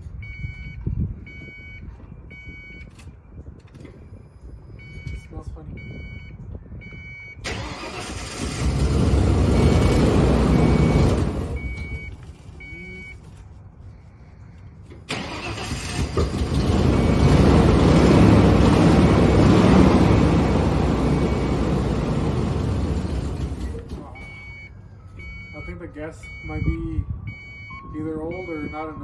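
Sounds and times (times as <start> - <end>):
vehicle warning chime: 4.0 - 8.7, 9.6 - 13.3, 15.2 - 29.0
engine cranking: 7.5 - 12.7, 14.9 - 24.6.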